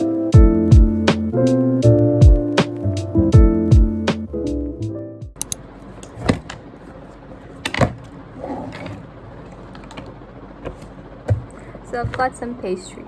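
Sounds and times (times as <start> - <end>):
background music: 0.0 - 5.3
light knocks and clicks: 9.7 - 12.3.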